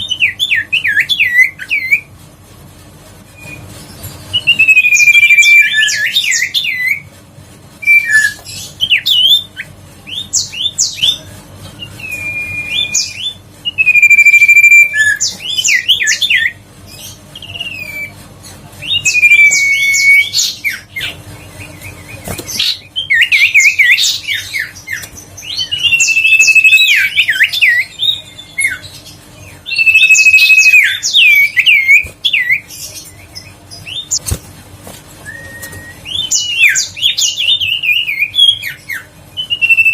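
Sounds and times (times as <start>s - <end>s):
songbird singing whistles and chirps: 3.4s - 7.0s, 7.8s - 11.2s, 11.8s - 18.2s, 18.8s - 34.4s, 35.2s - 39.9s.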